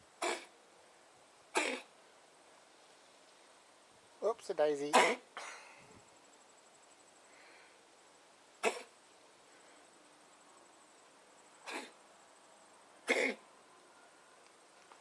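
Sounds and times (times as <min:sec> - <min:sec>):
kitten coughing: 0:00.2 - 0:00.5, 0:01.6 - 0:01.9, 0:04.9 - 0:05.5, 0:08.6 - 0:08.9, 0:11.7 - 0:12.0, 0:13.1 - 0:13.4.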